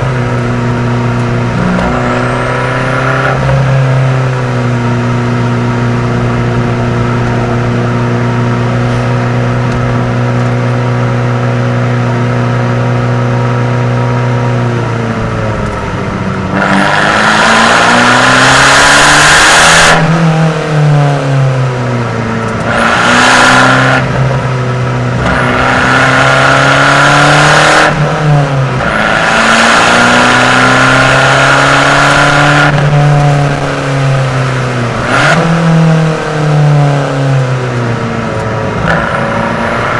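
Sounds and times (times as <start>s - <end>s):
car engine revving: 0.0s - 39.9s.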